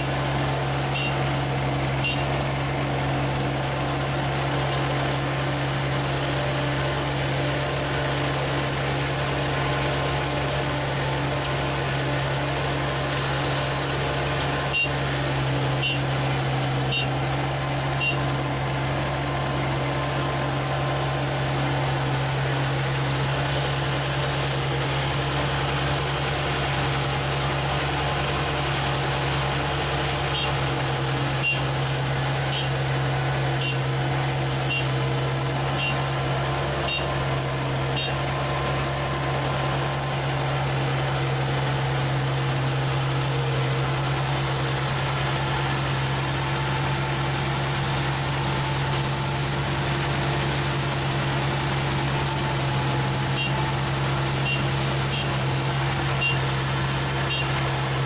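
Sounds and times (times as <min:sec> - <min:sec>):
combine harvester engine hum: 0:00.0 - 0:58.0.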